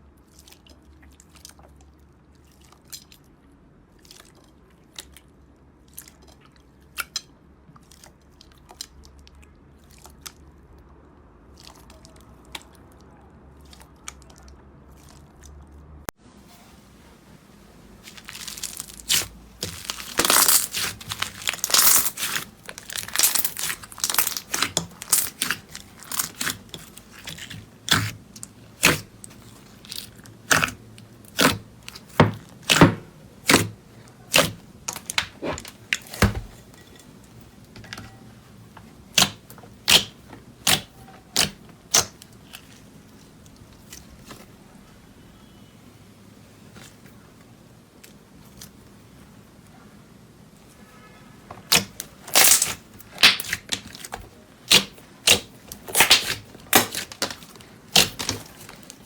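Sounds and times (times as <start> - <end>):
slime popping: 18.0 - 36.5, 51.7 - 59.0
slime crackling and tearing: 18.0 - 36.9, 39.1 - 44.5, 51.6 - 59.0.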